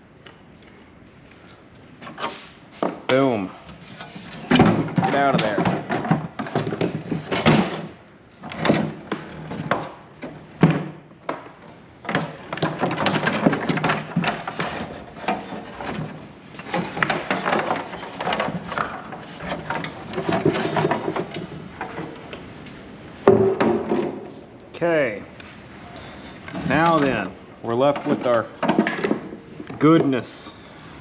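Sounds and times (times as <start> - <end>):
metal parts and tools clattering: 3.8 - 10.8, 12.0 - 22.2, 26.3 - 30.0.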